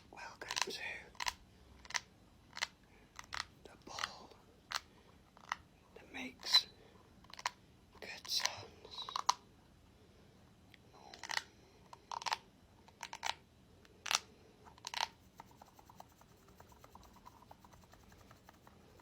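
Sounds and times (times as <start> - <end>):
ball scratching and crackling: 0.0 - 6.6, 7.2 - 9.4, 14.0 - 19.0.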